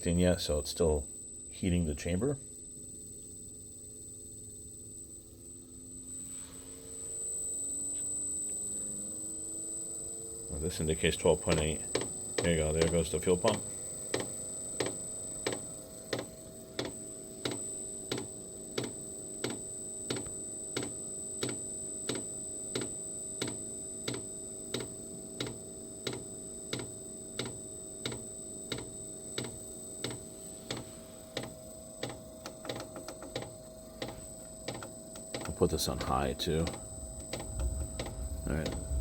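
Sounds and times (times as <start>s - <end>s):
steady hum: 0.0s - 39.0s.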